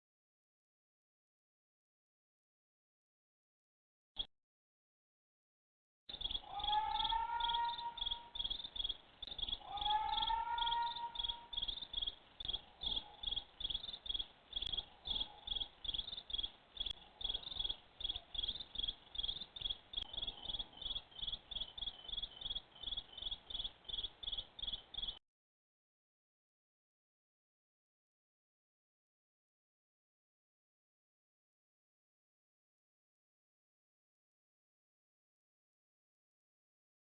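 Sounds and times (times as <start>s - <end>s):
insects chirping: 6.1s - 25.2s.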